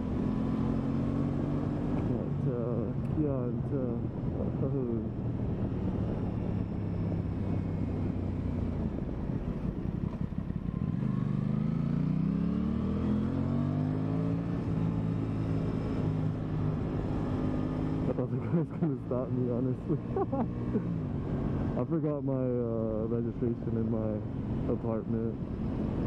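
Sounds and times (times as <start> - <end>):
motorcycle engine accelerating: 0.0 - 21.8.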